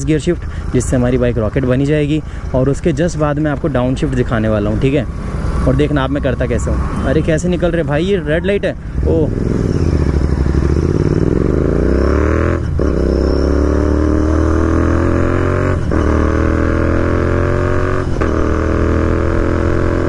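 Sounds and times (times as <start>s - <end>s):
motorcycle engine accelerating: 8.9s - 20.0s.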